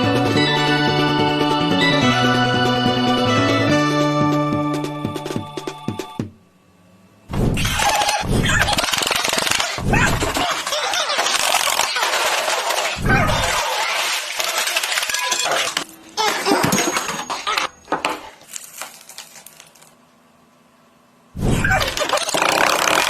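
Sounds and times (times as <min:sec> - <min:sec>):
small hard objects clattering: 0:18.0 - 0:20.0.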